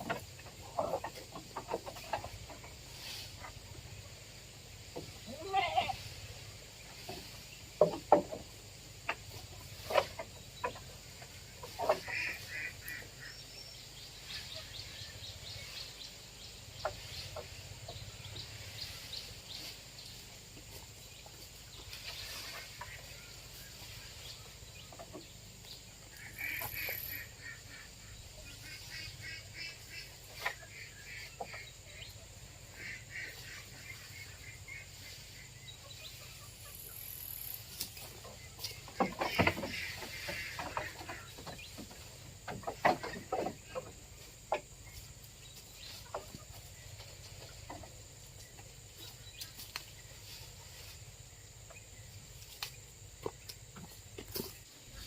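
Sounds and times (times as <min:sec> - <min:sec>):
poultry calling: 0:05.0 - 0:06.3, 0:09.1 - 0:16.0, 0:22.0 - 0:25.3, 0:26.0 - 0:47.9.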